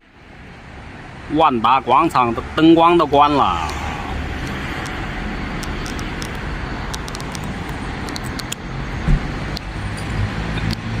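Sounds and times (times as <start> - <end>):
road traffic noise: 0.0 - 11.0
thump: 9.0 - 9.3.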